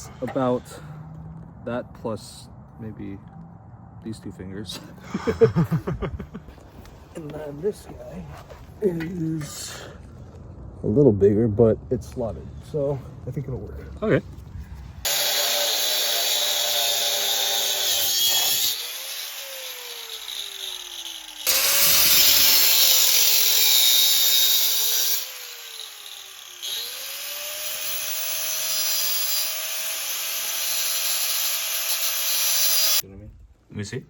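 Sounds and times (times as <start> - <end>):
power tool cutting pipe: 15.0 - 33.0.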